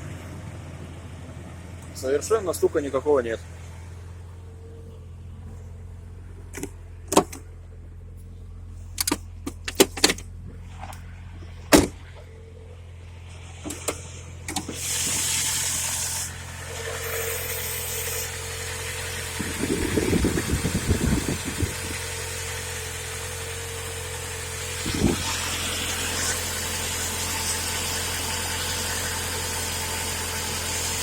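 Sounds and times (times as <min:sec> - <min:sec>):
engine running: 0:00.0 - 0:31.0
sharp clicks and knocks: 0:06.5 - 0:07.5, 0:08.9 - 0:11.0
loud hissing burst: 0:14.6 - 0:28.9.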